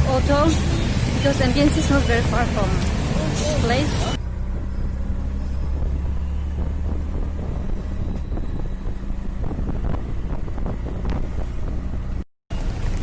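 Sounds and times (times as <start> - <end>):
auto-rickshaw engine droning: 0.0 - 13.0
wind noise on microphone: 4.0 - 12.2.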